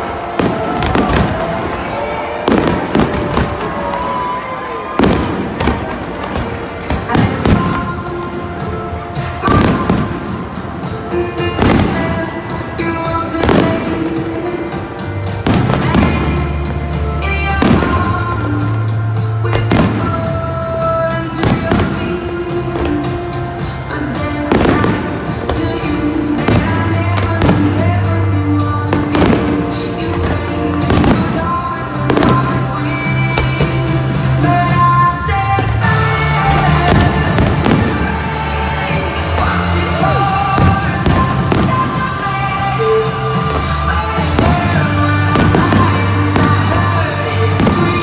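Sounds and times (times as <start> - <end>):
fireworks bangs with echo: 0.0 - 48.0
music with steady bass line: 7.1 - 48.0.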